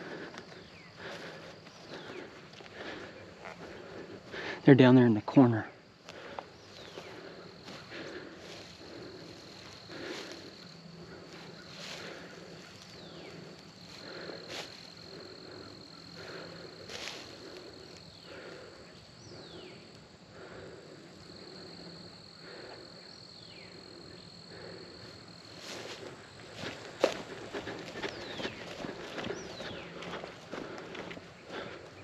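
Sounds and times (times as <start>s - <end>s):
insect trilling: 0.0s - 32.0s
footsteps through grass and brush: 6.0s - 15.5s, 16.1s - 18.0s, 25.5s - 32.0s.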